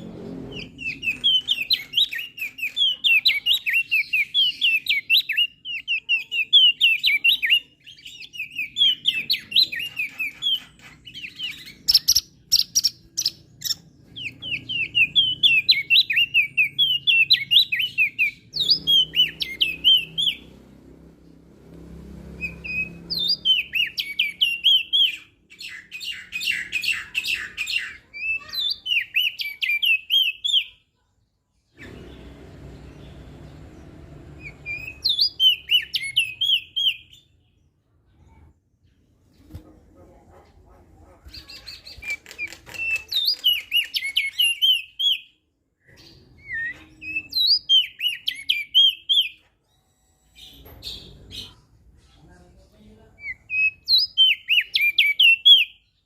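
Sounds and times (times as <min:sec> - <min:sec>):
bird chirping song: 0:00.0 - 0:56.0
sharp clicks: 0:42.0 - 0:44.0.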